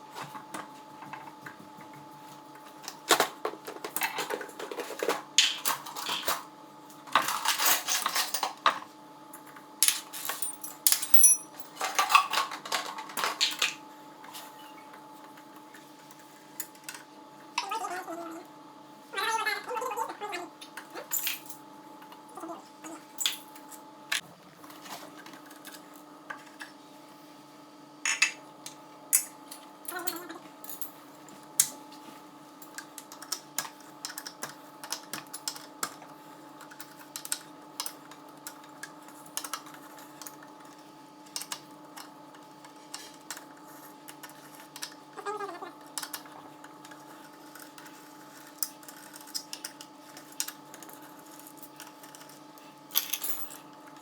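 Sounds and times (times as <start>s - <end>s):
metal parts clinking: 9.8s - 12.2s.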